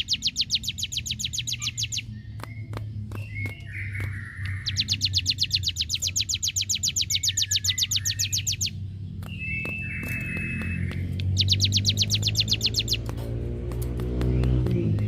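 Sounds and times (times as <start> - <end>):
bird song with buzzy notes and trills: 0.0 - 15.0
steady low hum: 0.0 - 15.0.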